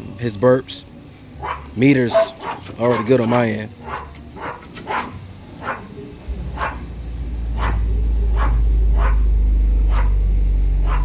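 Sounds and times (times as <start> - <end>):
dog barking: 1.4 - 6.9, 7.5 - 10.2, 10.8 - 11.0
subwoofers playing deep bass tone: 6.2 - 11.0.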